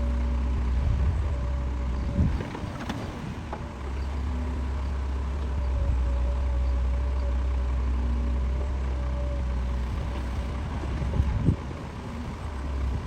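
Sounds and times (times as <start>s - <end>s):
heavy machine engine rumbling: 0.0s - 13.0s.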